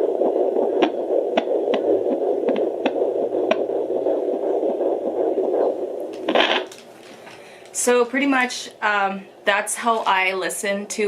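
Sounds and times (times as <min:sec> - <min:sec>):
pulsing heartbeat whoosh: 0:00.0 - 0:06.7
sharp crackles: 0:00.4 - 0:08.7.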